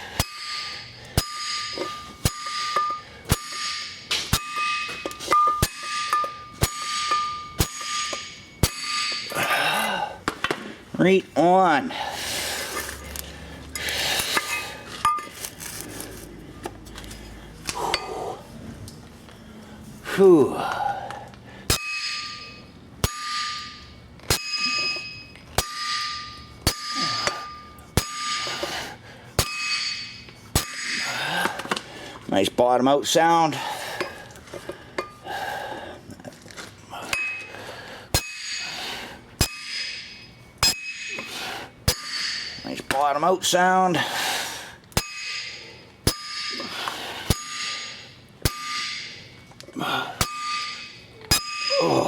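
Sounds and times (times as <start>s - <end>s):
steel tools clinking: 0.0s - 9.6s, 12.7s - 16.1s, 21.7s - 28.8s, 29.4s - 31.8s, 37.1s - 43.3s, 44.9s - 52.0s
ringing metal strike: 0.0s - 9.9s, 21.7s - 31.3s, 37.1s - 43.1s, 44.9s - 52.0s.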